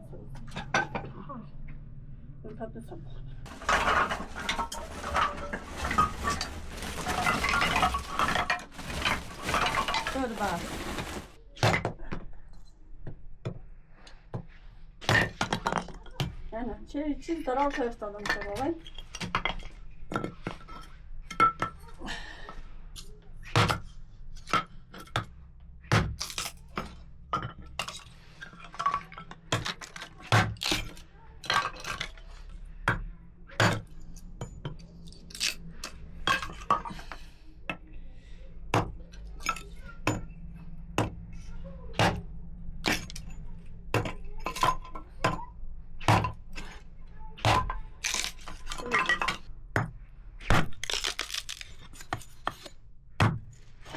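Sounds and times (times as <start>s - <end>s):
pots and dishes clinking: 3.5s - 11.3s.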